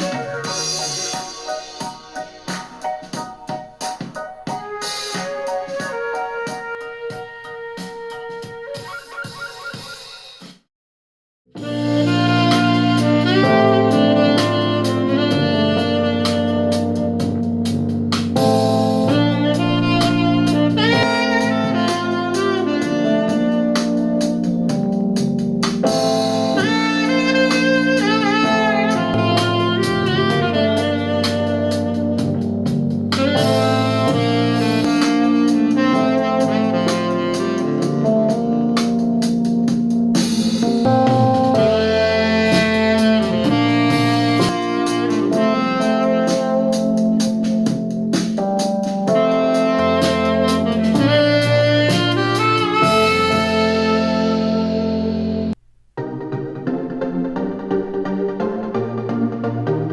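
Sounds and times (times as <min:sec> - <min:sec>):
jazzy saxophone music with drums: 0:00.0 - 0:10.6, 0:11.6 - 0:55.6.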